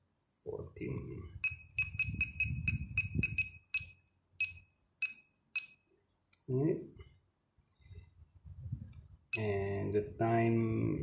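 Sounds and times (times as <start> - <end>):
short high electronic beeps: 1.4 - 5.9.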